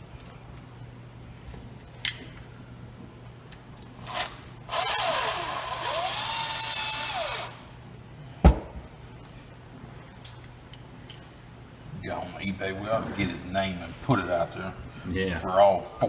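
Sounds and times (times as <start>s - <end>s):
power drill running: 3.9s - 7.6s.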